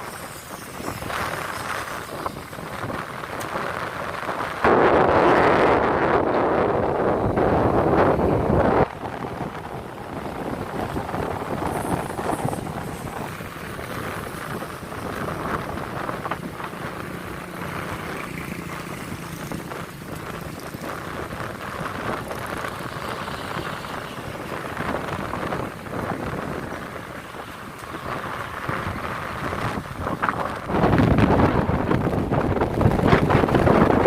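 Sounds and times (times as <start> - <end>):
gusty wind buffeting microphone: 0.0 - 34.0.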